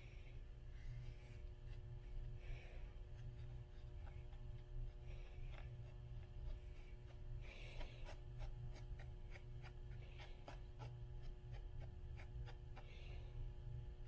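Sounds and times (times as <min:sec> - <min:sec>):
low steady rumble: 0:00.0 - 0:14.0.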